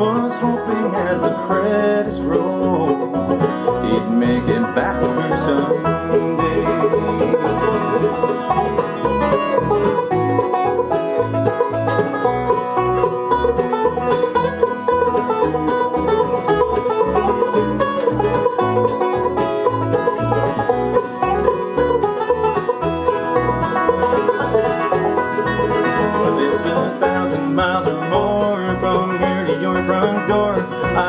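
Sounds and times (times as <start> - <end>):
banjo: 0.0 - 31.0
bass beat: 0.0 - 31.0
guitar: 0.0 - 31.0
mandolin: 0.0 - 31.0.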